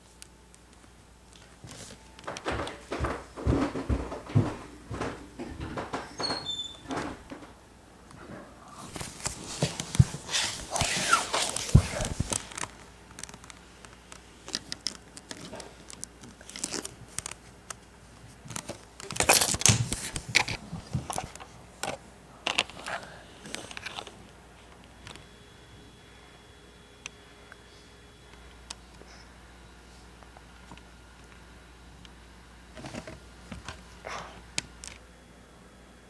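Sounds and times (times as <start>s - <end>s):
plastic crinkling: 8.9s - 21.4s.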